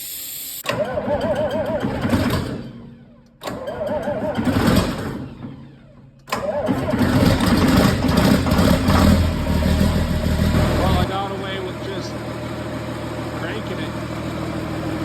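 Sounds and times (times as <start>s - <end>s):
starter motor cranking: 0.6s - 11.3s
diesel engine running: 6.5s - 15.0s.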